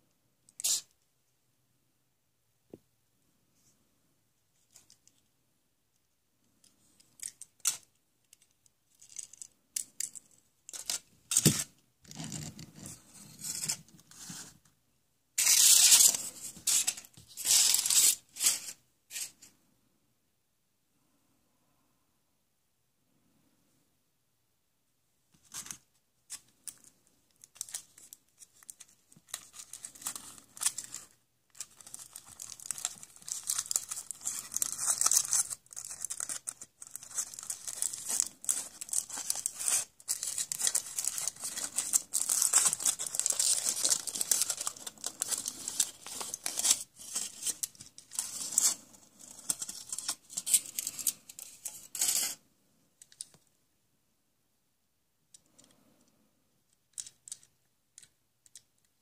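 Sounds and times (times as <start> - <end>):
foil wrapper tearing and crinkling: 31.6 - 48.8.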